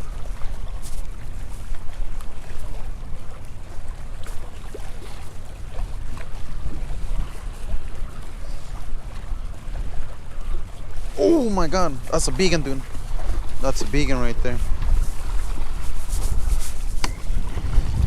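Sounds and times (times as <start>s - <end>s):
strong wind buffeting microphone: 11.1s - 18.0s.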